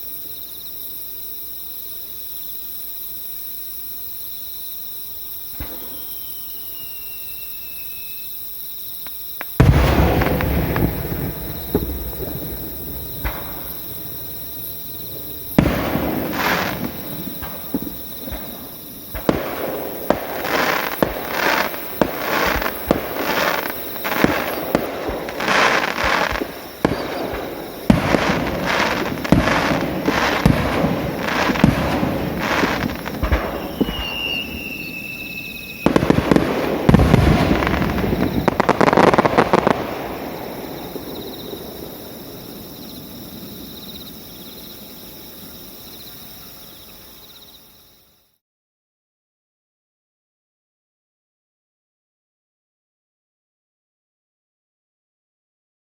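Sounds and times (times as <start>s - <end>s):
fireworks bursting: 5.4s - 44.2s
falling whistle: 5.7s - 8.4s, 32.5s - 36.0s.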